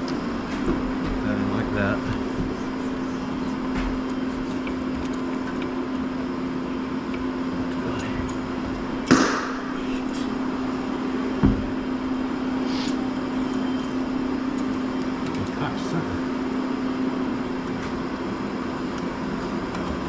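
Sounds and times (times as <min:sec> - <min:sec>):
machine hum: 0:00.0 - 0:20.0
dull thump: 0:11.4 - 0:11.7.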